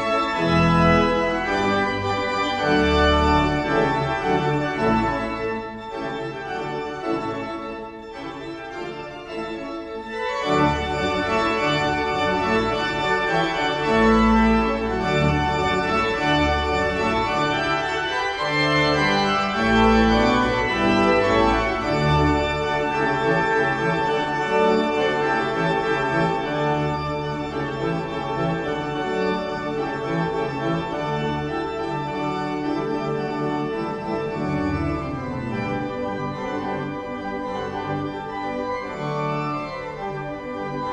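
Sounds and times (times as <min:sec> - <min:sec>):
organ chords: 0:00.0 - 0:40.9.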